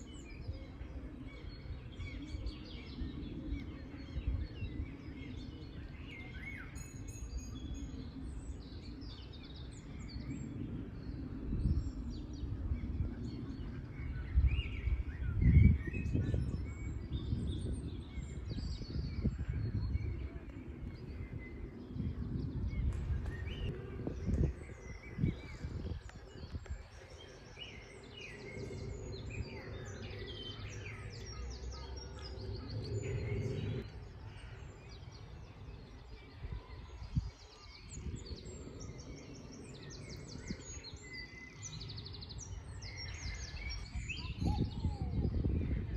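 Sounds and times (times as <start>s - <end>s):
small birds chirping: 0.0s - 45.9s
low outdoor rumble: 7.8s - 36.4s.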